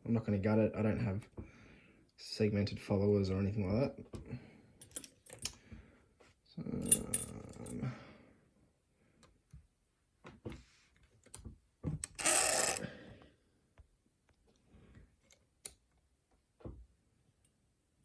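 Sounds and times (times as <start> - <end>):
metallic clicks of lock-picking tools: 4.8 - 5.6.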